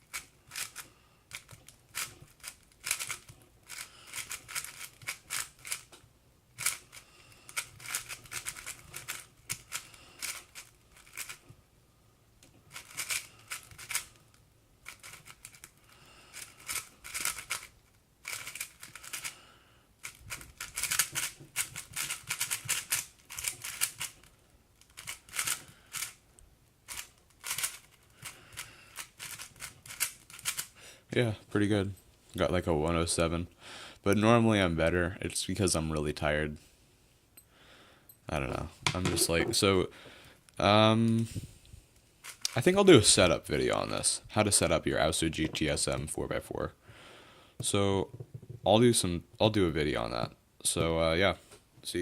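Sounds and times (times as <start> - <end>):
speed cube clacking turns: 0.0 - 5.9, 6.6 - 11.4, 12.7 - 14.2, 14.8 - 19.4, 20.0 - 26.2, 26.8 - 30.8, 42.2 - 42.6.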